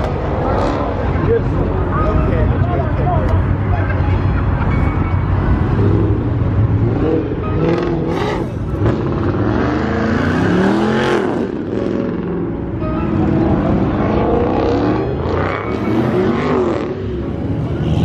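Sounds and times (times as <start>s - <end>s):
car engine revving: 0.0s - 2.4s, 5.4s - 18.0s
rumble of running engines: 0.0s - 18.0s.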